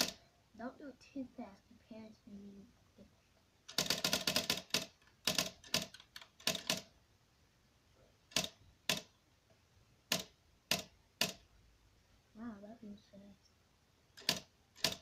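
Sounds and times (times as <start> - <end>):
typewriter keys striking: 3.7 - 6.9, 8.3 - 9.1, 10.1 - 11.4, 14.2 - 15.0.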